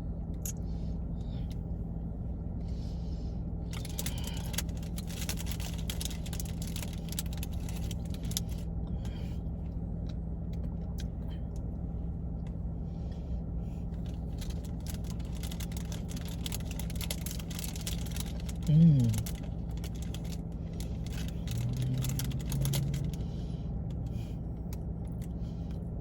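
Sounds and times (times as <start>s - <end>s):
steady low hum: 0.0s - 26.0s
cookie chewing: 14.1s - 23.2s.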